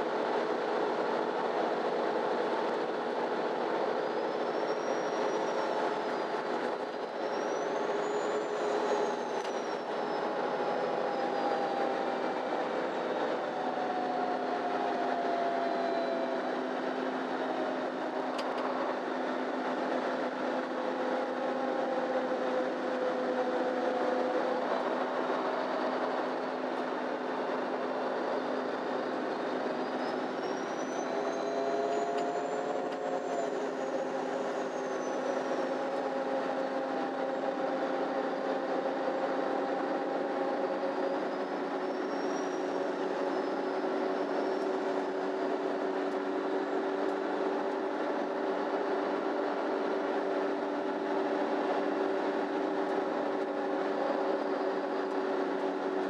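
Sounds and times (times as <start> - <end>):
bus drivetrain rumble: 0.0 - 56.0
whining tones gliding in pitch: 0.1 - 56.0.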